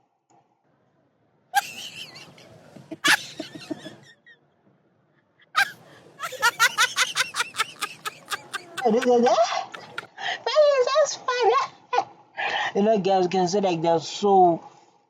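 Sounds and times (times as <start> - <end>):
person laughing: 1.6 - 4.2, 5.6 - 10.1.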